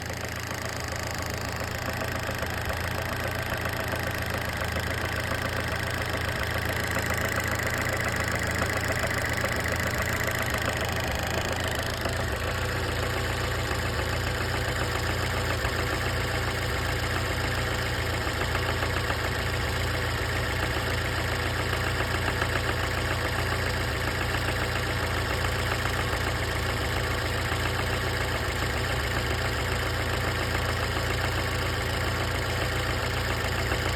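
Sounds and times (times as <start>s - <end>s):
rhythmic engine knocking: 0.0s - 24.0s
car engine idling: 0.0s - 33.9s.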